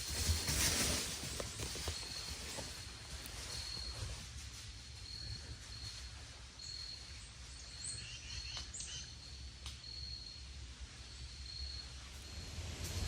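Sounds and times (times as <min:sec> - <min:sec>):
low wind rumble: 0:10.5 - 0:13.0.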